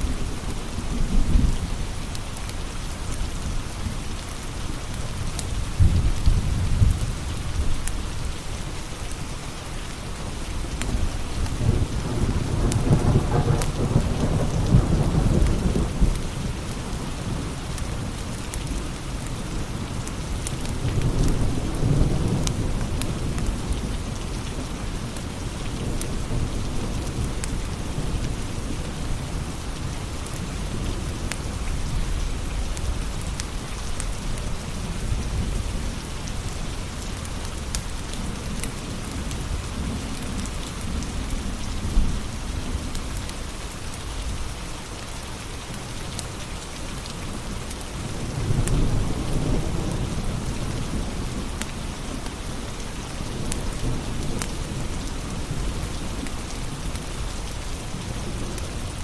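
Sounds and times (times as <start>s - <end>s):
steady rain: 0.0s - 59.0s
low rolling thunder: 5.5s - 8.2s, 10.6s - 17.6s, 19.4s - 33.4s, 47.3s - 57.3s.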